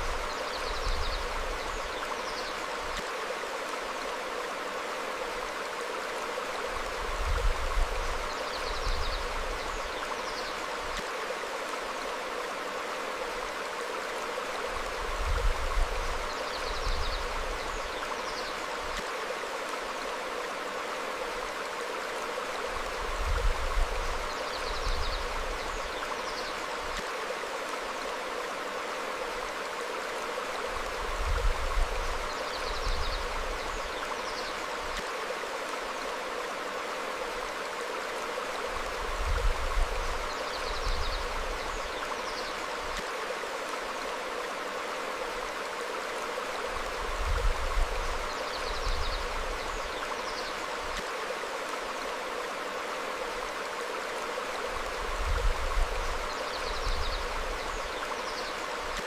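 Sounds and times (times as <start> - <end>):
stream flowing over rocks: 0.0 - 59.0.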